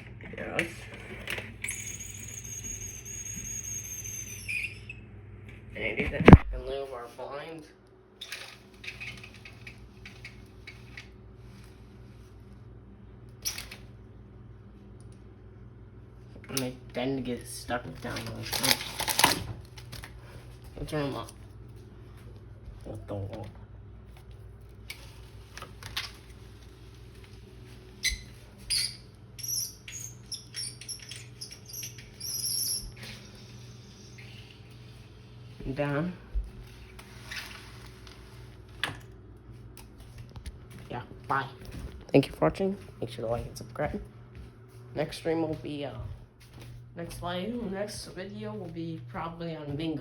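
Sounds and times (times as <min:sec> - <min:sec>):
squeaks and ticks: 0:01.6 - 0:05.0, 0:28.0 - 0:34.4.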